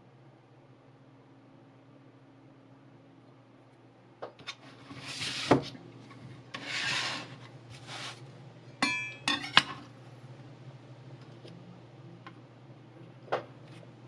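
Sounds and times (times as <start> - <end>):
knife scraping on sandpaper: 6.6 - 8.2.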